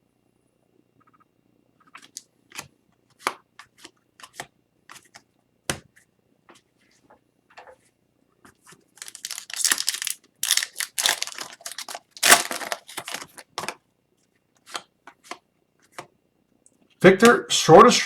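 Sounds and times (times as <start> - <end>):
cards being handled: 1.8 - 5.3, 8.5 - 13.8
foil wrapper ripping and crinkling: 9.0 - 13.6.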